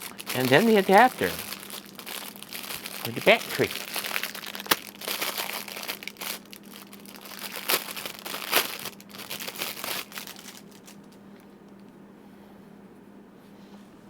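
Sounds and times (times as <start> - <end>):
plastic packaging crinkling: 0.0 - 11.2.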